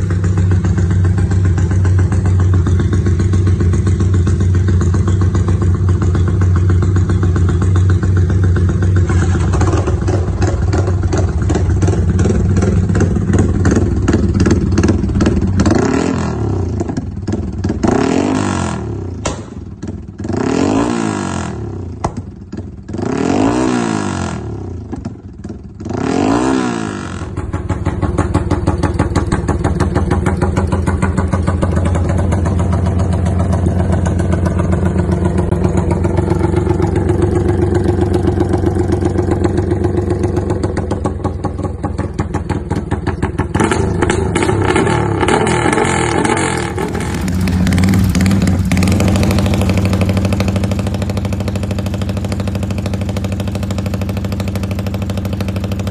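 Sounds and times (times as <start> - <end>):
motorcycle engine loping idle: 0.0 - 55.9
motorcycle engine throttle blips: 27.2 - 55.9.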